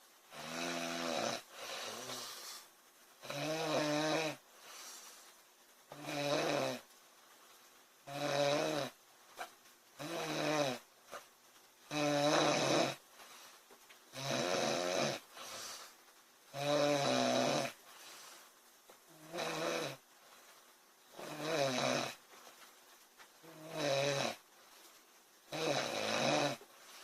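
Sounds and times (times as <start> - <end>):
woman snoring: 0.3 - 4.4, 5.9 - 6.9, 8.1 - 9.0, 10.0 - 10.8, 11.9 - 13.0, 14.1 - 15.9, 16.5 - 17.8, 19.1 - 20.0, 21.1 - 22.2, 23.4 - 24.4, 25.5 - 26.6
faint breathing: 1.4 - 3.4, 4.4 - 5.5, 13.0 - 13.9, 15.2 - 16.2, 17.7 - 19.3, 26.6 - 27.0.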